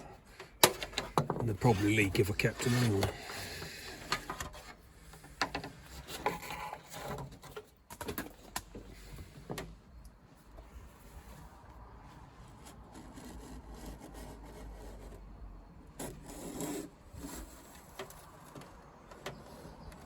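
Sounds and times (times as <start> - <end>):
blade rasping through rubber seal: 12.6 - 15.3, 16.0 - 18.0.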